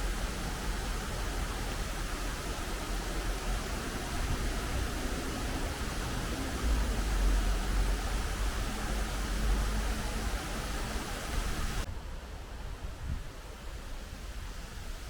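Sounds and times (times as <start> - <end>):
steady rain falling: 0.0 - 15.0.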